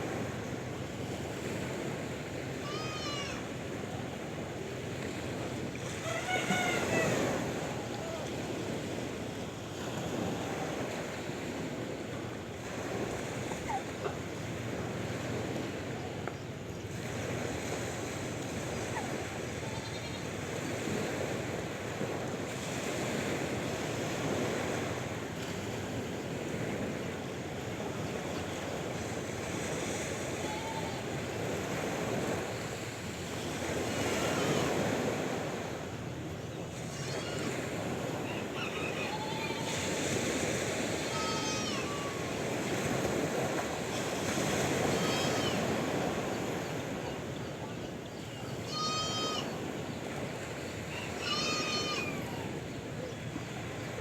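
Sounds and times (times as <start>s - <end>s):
sea waves washing in: 0.0s - 54.0s
faint short animal calls: 5.9s - 8.3s, 30.4s - 31.0s, 38.2s - 40.0s, 41.0s - 42.3s, 44.9s - 45.8s, 48.4s - 49.6s, 50.9s - 52.6s.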